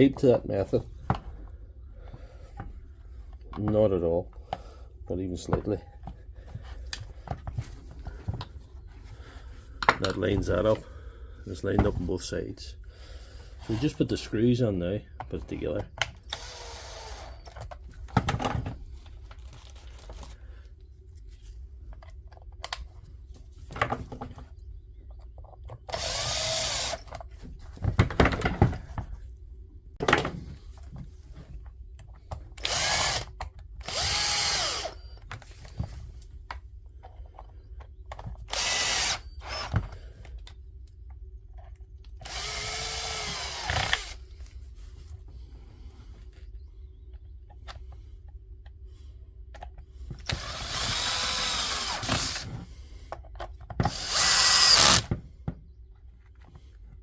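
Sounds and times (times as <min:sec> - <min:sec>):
power screwdriver driving screws: 0:16.2 - 0:17.6, 0:25.9 - 0:27.2, 0:32.6 - 0:35.1, 0:38.5 - 0:39.8, 0:42.2 - 0:44.2, 0:50.2 - 0:52.5, 0:53.9 - 0:55.1.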